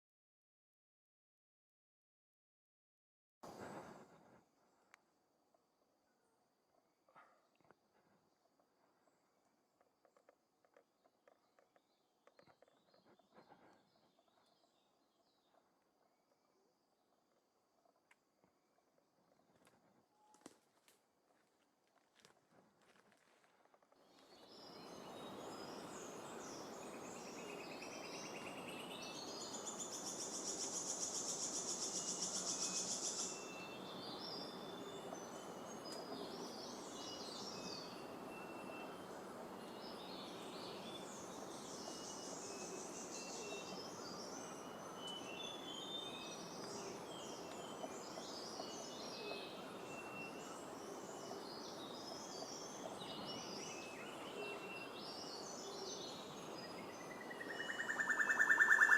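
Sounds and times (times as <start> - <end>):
steady background hiss: 24.4 - 58.9.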